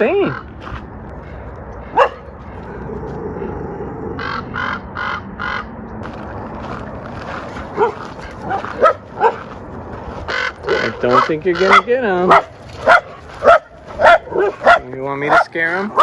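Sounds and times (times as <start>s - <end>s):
dog barking and yelping: 1.2s - 3.0s, 7.6s - 9.6s, 10.4s - 16.0s.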